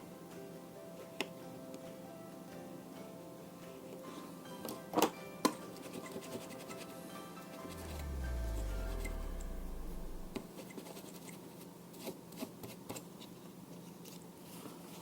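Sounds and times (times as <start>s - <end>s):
low rumble: 7.6s - 10.5s.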